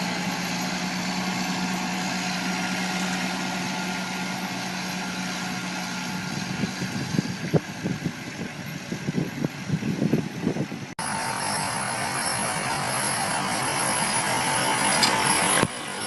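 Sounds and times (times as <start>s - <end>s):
machine engine running: 0.0s - 16.0s
steady machine noise: 0.0s - 16.0s.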